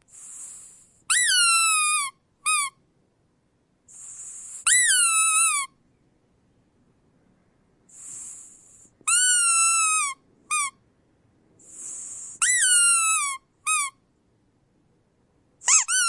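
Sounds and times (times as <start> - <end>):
soft hiss of air: 0.0 - 1.1, 3.0 - 4.7, 5.8 - 9.1, 10.2 - 12.4
rubber squeak toy squeaking: 1.1 - 2.8, 4.4 - 5.8, 9.1 - 10.8, 12.2 - 14.0, 15.6 - 16.0.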